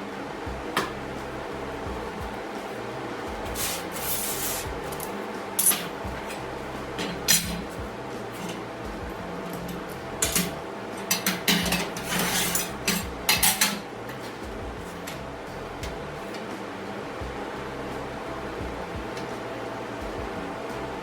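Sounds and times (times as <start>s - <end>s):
steady shop hum: 0.0s - 21.0s
steel pieces clanking on metal table: 3.6s - 6.0s, 9.6s - 14.4s.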